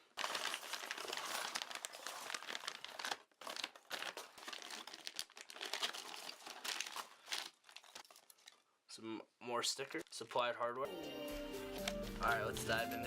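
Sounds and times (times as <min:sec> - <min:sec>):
packaging crinkling and rustling: 0:00.0 - 0:08.7, 0:09.8 - 0:10.6.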